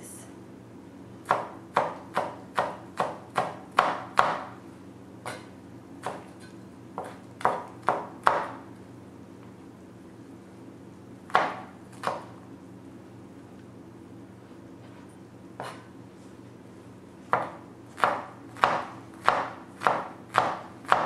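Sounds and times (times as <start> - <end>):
knife chopping on cutting board: 1.2 - 4.6, 5.2 - 8.6, 11.3 - 12.4, 15.6 - 15.9, 17.3 - 21.0.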